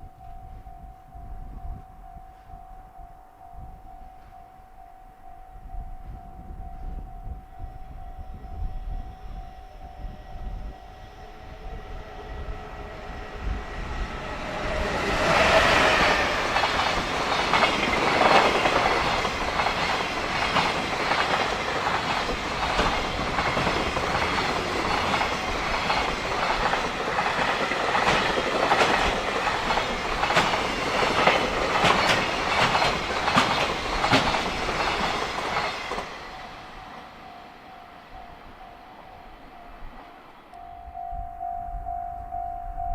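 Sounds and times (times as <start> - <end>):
level crossing warning bell: 0.0 - 42.9
freight train passing: 4.2 - 41.6
wheels clacking over rail joints: 12.6 - 37.2.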